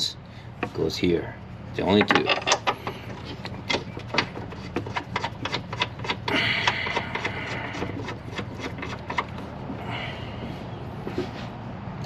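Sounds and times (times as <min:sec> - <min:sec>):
metal tools clicking and clinking: 0:01.9 - 0:09.3.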